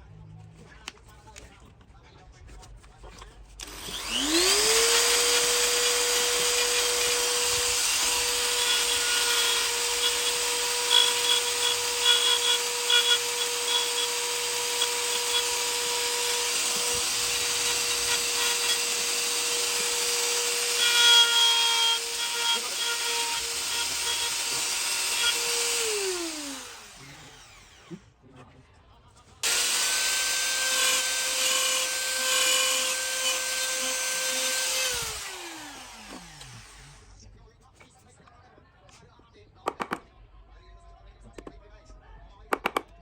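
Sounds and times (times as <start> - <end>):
tool cutting into wood: 3.6 - 27.9, 29.4 - 37.0
power tool motor whining: 3.6 - 28.0, 29.4 - 37.1.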